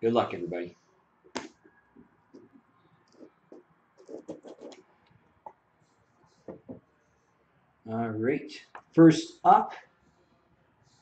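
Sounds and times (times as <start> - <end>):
packaging scratching: 4.0 - 4.8.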